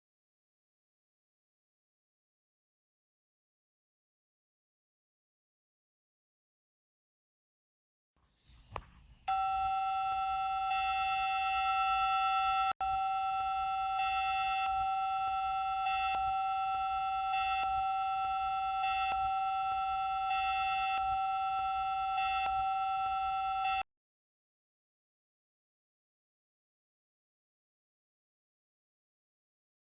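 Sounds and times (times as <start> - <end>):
two-tone alert signal: 9.3 - 23.8.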